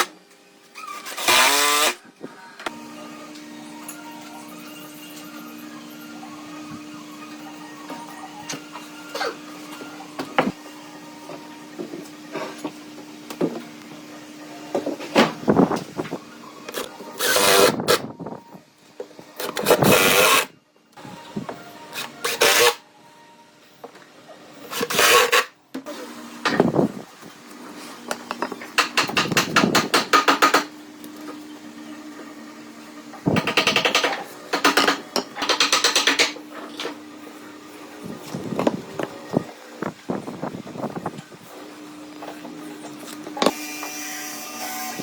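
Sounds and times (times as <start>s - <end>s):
power tool working wood: 1.0s - 2.0s, 43.4s - 45.0s.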